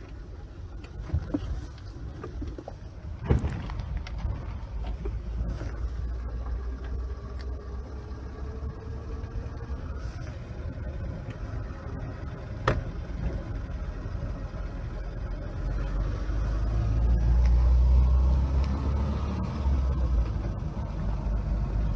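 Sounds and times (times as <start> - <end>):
vehicle engine rumbling: 0.0 - 21.9.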